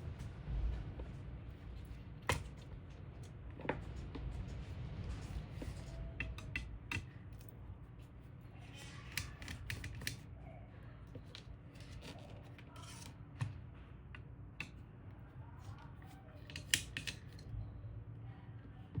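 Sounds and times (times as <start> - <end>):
low steady hum: 0.0 - 19.0
small parts clicking and tapping: 16.4 - 17.5.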